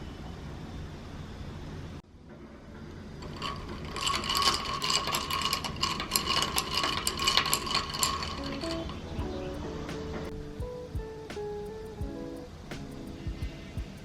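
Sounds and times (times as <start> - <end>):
rapid ratcheting mechanical clicking: 3.2 - 9.2.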